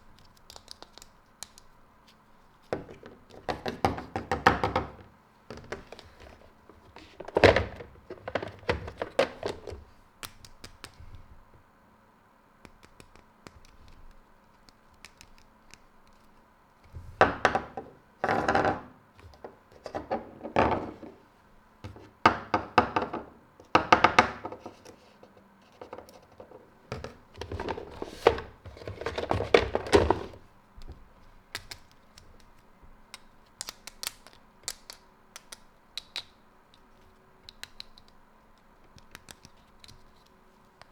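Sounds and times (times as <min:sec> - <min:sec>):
plastic toys clattering: 0:02.8 - 0:09.8, 0:25.8 - 0:30.4.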